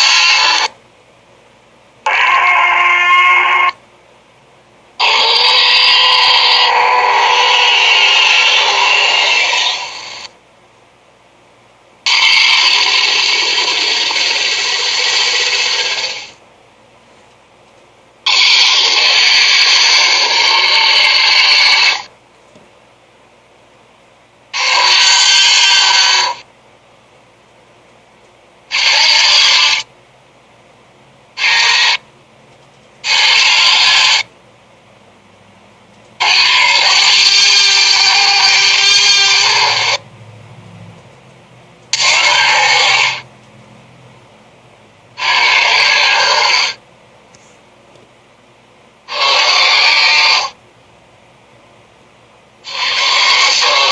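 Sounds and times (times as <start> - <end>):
harsh hissy cartoon effect: 0.0 - 0.8, 2.0 - 3.8, 5.0 - 10.3, 12.0 - 16.4, 18.2 - 22.1, 24.5 - 26.4, 28.7 - 29.9, 31.4 - 32.0, 33.0 - 34.3, 36.2 - 40.0, 41.9 - 43.2, 45.2 - 46.8, 49.1 - 50.6, 52.6 - 53.9.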